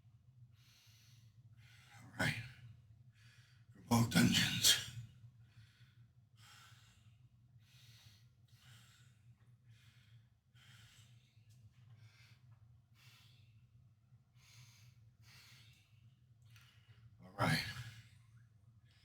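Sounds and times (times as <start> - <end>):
faint breathing: 5.4 - 17.1.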